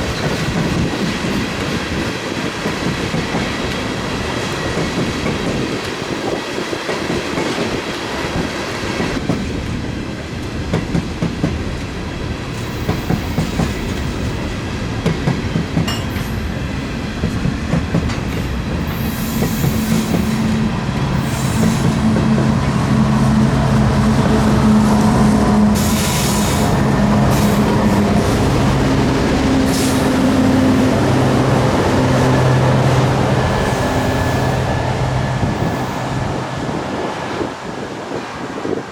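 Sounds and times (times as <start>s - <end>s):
train wheels clacking over rail joints: 15.0s - 16.4s
diesel locomotive engine drone: 15.8s - 38.9s.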